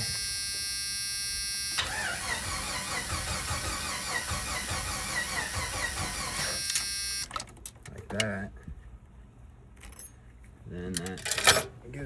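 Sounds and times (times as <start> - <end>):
engine cranking on starter motor: 1.7 - 7.4.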